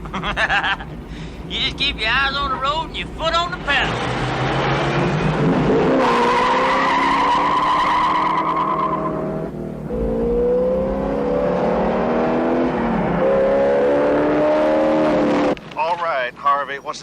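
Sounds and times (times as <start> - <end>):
car engine accelerating hard: 3.8 - 15.6.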